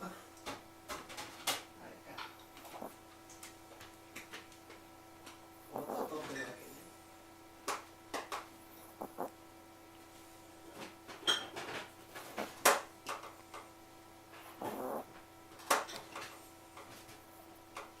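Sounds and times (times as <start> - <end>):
dog snoring: 2.6 - 3.0, 5.6 - 6.9, 8.7 - 9.4, 14.4 - 15.2.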